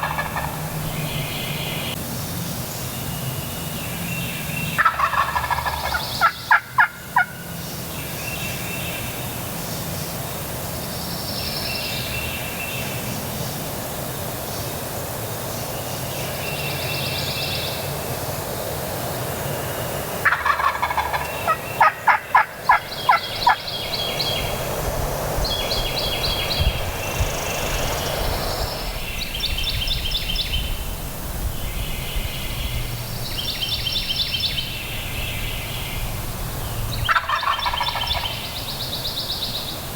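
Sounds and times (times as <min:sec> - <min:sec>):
turkey gobbling: 0:00.0 - 0:01.5, 0:04.8 - 0:07.4, 0:20.2 - 0:23.7, 0:37.1 - 0:38.6
songbirds chirping: 0:00.0 - 0:39.9.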